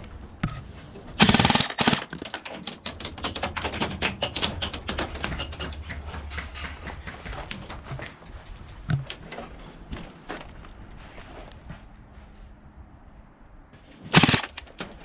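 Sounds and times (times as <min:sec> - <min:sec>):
airsoft machine gun burst: 0:01.2 - 0:02.2, 0:14.1 - 0:15.0
airsoft fire and bb strikes: 0:14.1 - 0:15.0.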